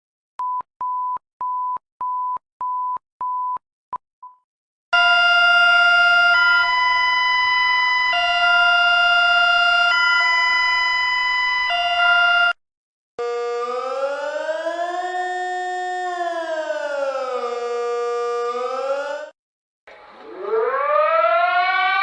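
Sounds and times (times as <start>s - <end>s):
rising and falling siren wail: 5.0s - 12.6s, 13.2s - 19.4s, 20.0s - 22.0s
two-tone alert alarm: 5.0s - 12.6s.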